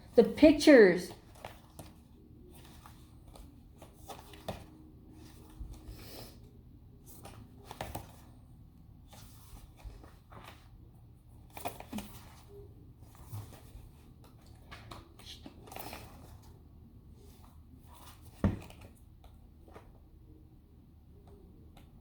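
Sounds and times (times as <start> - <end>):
photo album pages turned: 1.1 - 5.9, 7.0 - 16.6
paper rustling: 1.1 - 6.0, 9.0 - 10.8.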